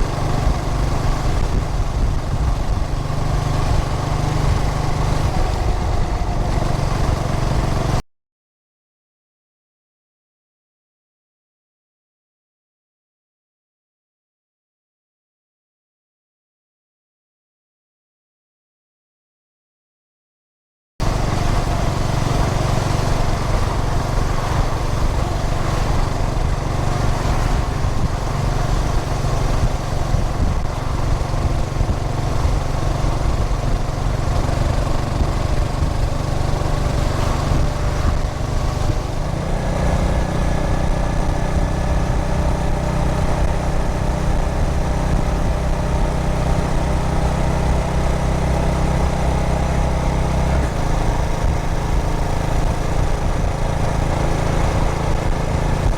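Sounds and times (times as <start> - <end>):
motorcycle engine running: 0.0 - 8.0, 21.0 - 55.9
road and wind noise: 0.0 - 8.0, 21.0 - 55.9.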